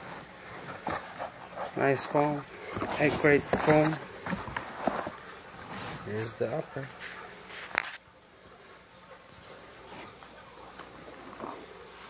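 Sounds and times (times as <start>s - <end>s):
packaging rustle: 0.0s - 8.0s.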